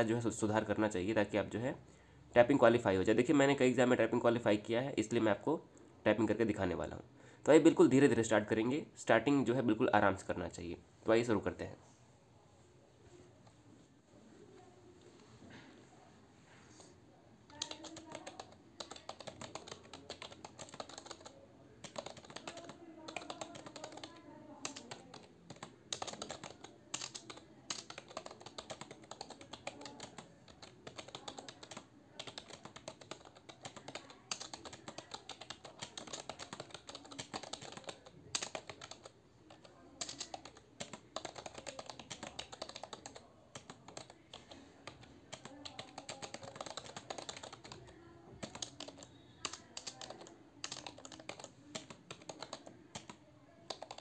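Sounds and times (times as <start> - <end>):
typing on computer keyboard: 17.5 - 54.0.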